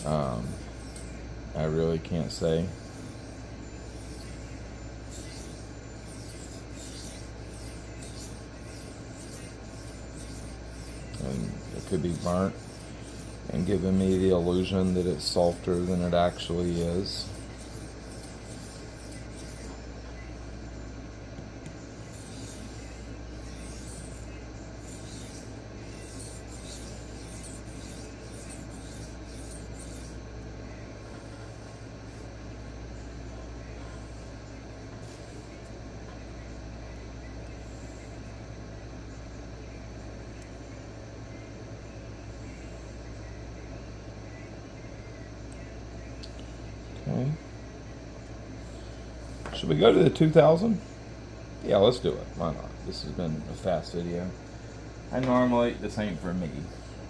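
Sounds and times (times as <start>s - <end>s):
knife rasping on sharpening stone: 0.0s - 1.2s, 2.1s - 19.8s, 22.0s - 30.2s.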